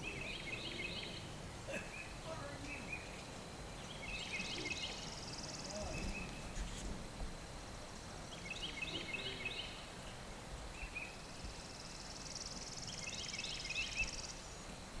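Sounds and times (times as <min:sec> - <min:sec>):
songbird chirping: 0:00.0 - 0:06.5, 0:07.9 - 0:10.2
insect buzz: 0:00.1 - 0:09.9.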